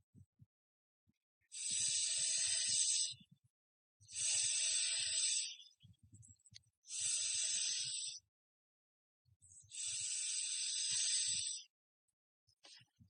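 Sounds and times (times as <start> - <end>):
long hisses: 4.1 - 5.6, 6.9 - 8.1, 9.7 - 11.5.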